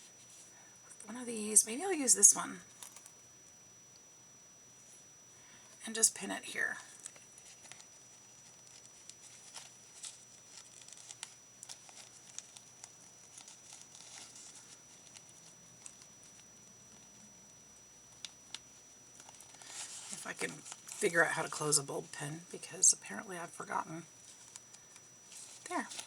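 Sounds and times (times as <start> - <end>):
faint paper rustling: 6.9 - 22.8, 24.1 - 26.0.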